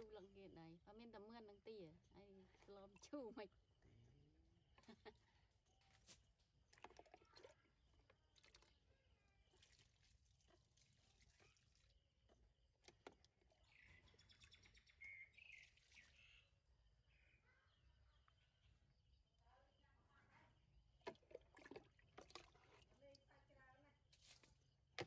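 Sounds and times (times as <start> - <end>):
faint high chirps: 13.6 - 16.5.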